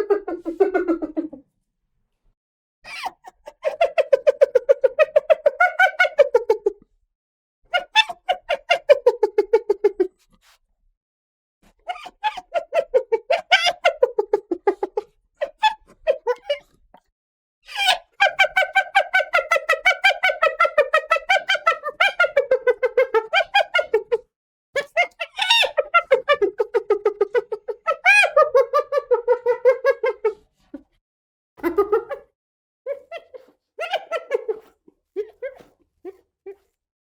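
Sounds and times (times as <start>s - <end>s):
hyena laughing: 0.0s - 1.4s, 32.9s - 36.7s.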